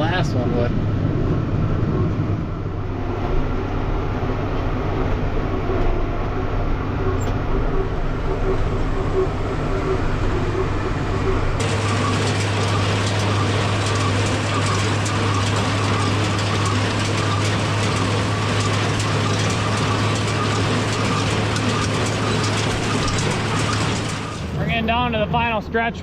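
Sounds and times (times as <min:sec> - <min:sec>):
tractor diesel engine running: 0:00.0 - 0:26.0
baler clattering: 0:09.2 - 0:24.6.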